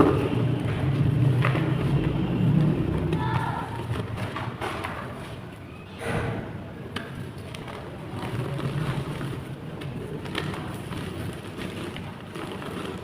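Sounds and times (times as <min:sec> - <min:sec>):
low steady hum: 0:00.0 - 0:04.8.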